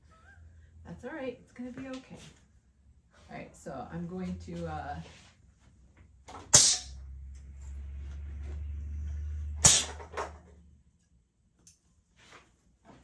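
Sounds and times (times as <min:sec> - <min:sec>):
pneumatic air hiss: 0:06.5 - 0:06.9, 0:09.6 - 0:10.0.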